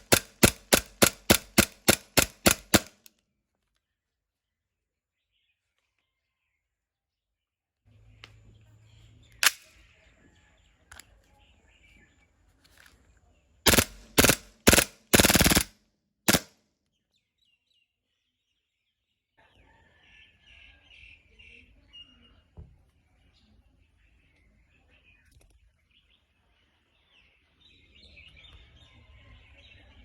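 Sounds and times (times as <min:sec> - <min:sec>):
airsoft gun firing: 0:00.0 - 0:03.1, 0:13.7 - 0:15.7, 0:16.3 - 0:16.5
faint birds chirping: 0:03.5 - 0:15.6, 0:16.8 - 0:30.0.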